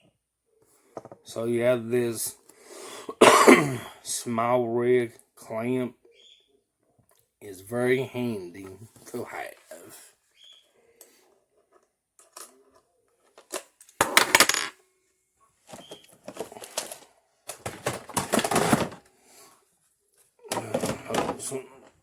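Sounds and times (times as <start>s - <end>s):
small metal objects clattering: 14.0s - 14.7s.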